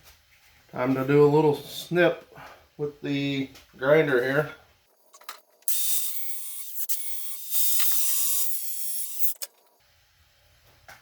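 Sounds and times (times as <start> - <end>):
grinder cutting sheet metal: 5.7 - 9.5.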